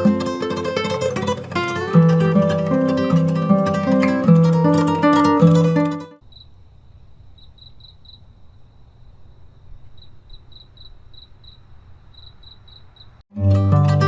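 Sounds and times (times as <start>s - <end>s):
plucked string music: 0.0s - 6.2s, 13.3s - 14.0s
cricket trilling: 6.2s - 13.2s.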